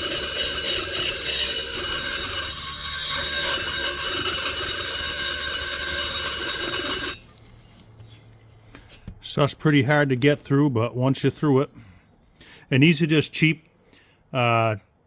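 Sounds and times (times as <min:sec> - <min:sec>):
rotary tool grinding metal: 0:00.0 - 0:07.8.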